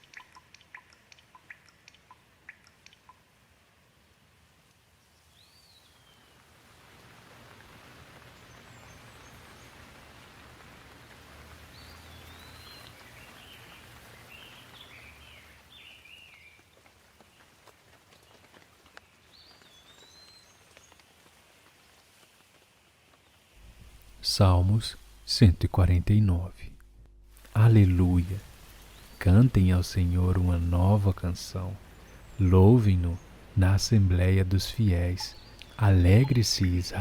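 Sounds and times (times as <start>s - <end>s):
faint steady rain: 0.0s - 37.0s
birds chirping: 11.7s - 16.6s, 27.4s - 37.0s.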